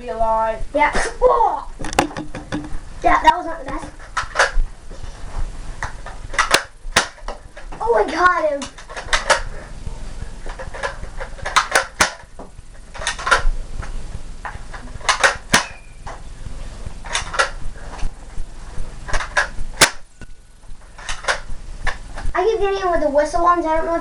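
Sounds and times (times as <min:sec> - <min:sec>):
toy dart blaster clicks and snaps: 0:04.2 - 0:04.6, 0:05.8 - 0:07.7, 0:08.6 - 0:09.5, 0:10.5 - 0:12.3, 0:12.9 - 0:13.5, 0:14.7 - 0:15.8, 0:17.1 - 0:17.6, 0:19.1 - 0:20.1, 0:21.0 - 0:22.0.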